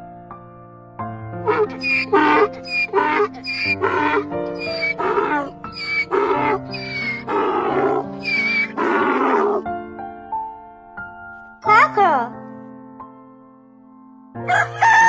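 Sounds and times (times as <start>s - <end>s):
donkey braying: 1.5s - 9.6s.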